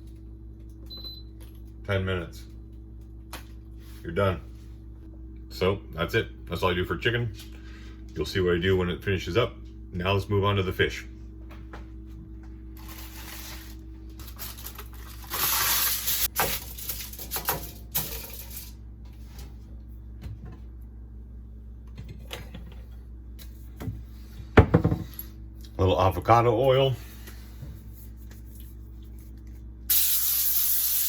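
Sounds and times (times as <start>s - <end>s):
kitchen items rustling and clattering: 12.7s - 19.7s, 22.0s - 25.4s.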